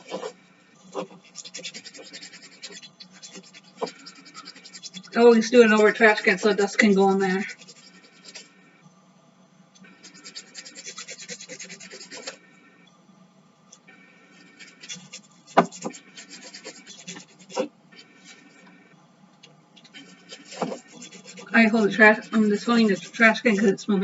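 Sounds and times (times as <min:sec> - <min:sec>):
nail file rasping on resin: 0:00.0 - 0:08.5, 0:10.0 - 0:12.4, 0:14.6 - 0:17.7, 0:19.8 - 0:23.3.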